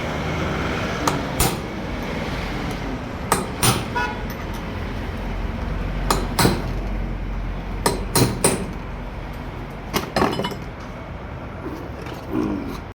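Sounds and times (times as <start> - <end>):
hammer striking metal: 1.0 - 1.8, 3.3 - 4.6, 6.1 - 6.9, 7.8 - 8.8.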